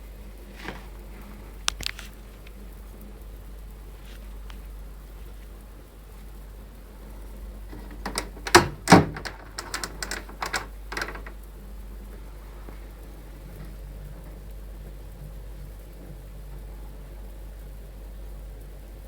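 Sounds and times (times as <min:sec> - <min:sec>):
boiler valve clicking and knocking: 0:07.7 - 0:11.4.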